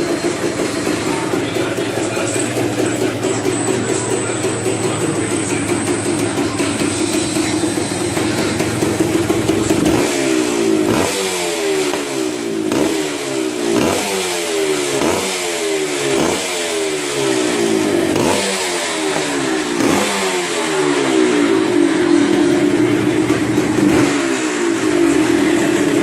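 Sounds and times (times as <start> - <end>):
motorcycle engine revving: 0.0 - 26.0.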